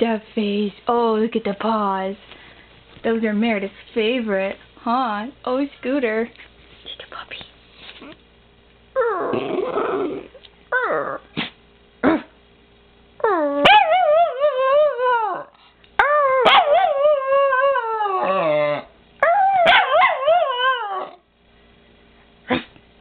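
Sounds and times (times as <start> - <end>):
dog howling: 13.2 - 21.2.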